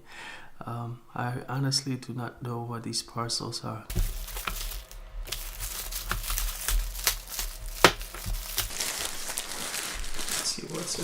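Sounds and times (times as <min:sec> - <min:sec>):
packaging crinkling and tearing: 0:03.9 - 0:11.0.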